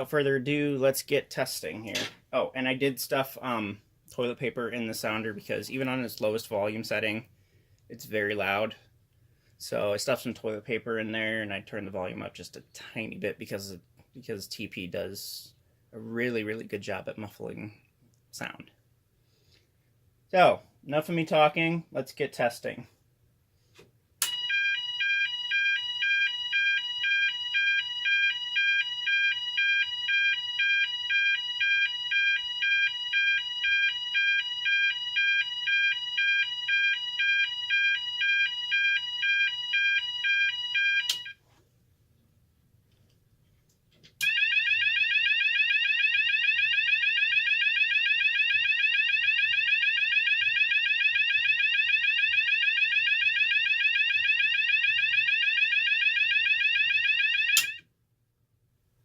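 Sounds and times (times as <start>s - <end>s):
alarm two-pitch alternating tone: 24.2s - 41.4s, 44.2s - 57.8s.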